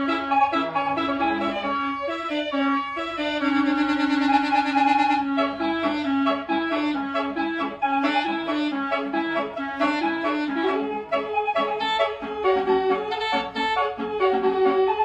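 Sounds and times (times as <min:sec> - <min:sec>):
reedy horn playing a melody: 0:00.0 - 0:15.0.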